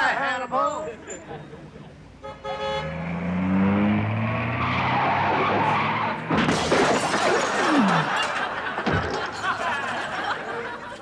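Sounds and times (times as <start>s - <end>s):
car engine revving: 2.7s - 6.3s
tyres screeching: 4.1s - 6.4s.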